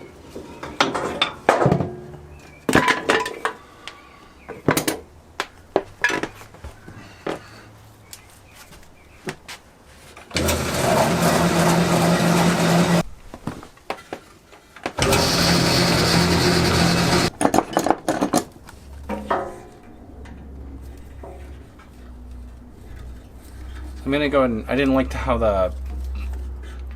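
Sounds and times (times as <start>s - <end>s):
small power tool motor humming: 10.3s - 13.0s, 15.0s - 17.3s.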